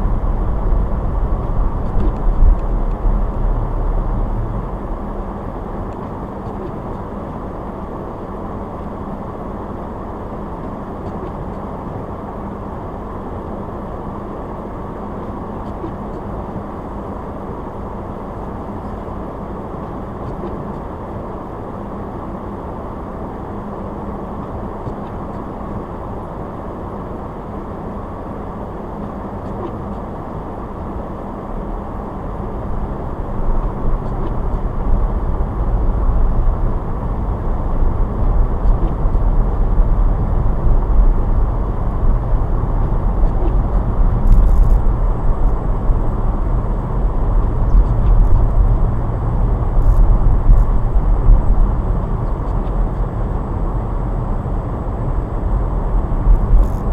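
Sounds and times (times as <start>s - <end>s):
low rumble: 0.0s - 10.1s, 30.6s - 56.9s
car road and engine noise: 0.0s - 56.9s.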